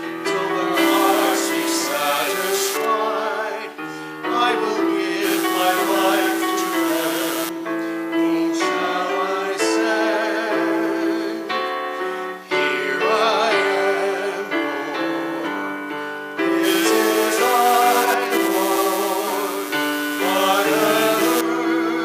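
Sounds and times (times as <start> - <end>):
hymn played on keyboard: 0.0 - 22.0
voices singing long notes: 0.2 - 3.8, 4.6 - 11.3, 16.5 - 22.0.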